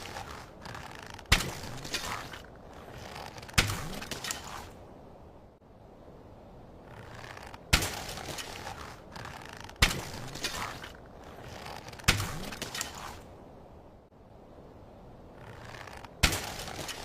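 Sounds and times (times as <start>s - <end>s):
slingshot or bow shots: 0.0s - 2.4s, 7.2s - 9.0s, 11.5s - 13.2s, 15.7s - 17.0s.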